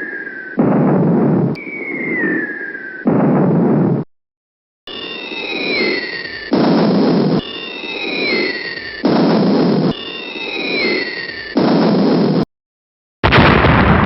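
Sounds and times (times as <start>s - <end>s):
descending bomb whistle: 0.0s - 0.9s, 1.6s - 3.4s, 4.9s - 11.5s
explosion blast: 0.6s - 1.5s, 13.2s - 14.0s.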